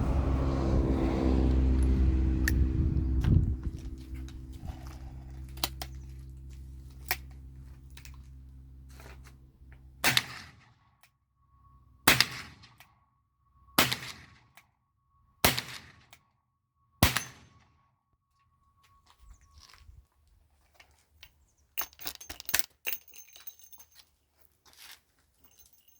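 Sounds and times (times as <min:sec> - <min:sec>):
steady low hum: 0:00.0 - 0:10.4
rifle shots: 0:12.1 - 0:12.6, 0:17.0 - 0:17.5.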